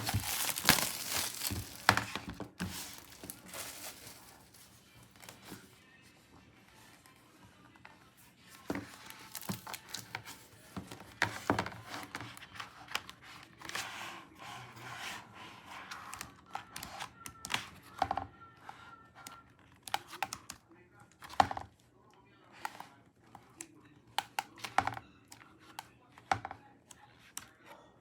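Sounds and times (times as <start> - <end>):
packaging clicks and taps: 0.0 - 4.3, 8.6 - 13.2
plastic wrapping crinkling: 0.0 - 5.6, 8.7 - 10.2.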